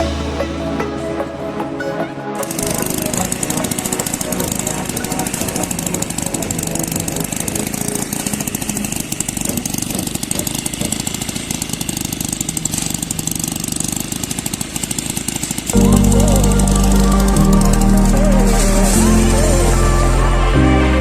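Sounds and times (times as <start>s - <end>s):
construction machine engine running: 0.0s - 21.0s
fast even rattle: 2.4s - 19.6s.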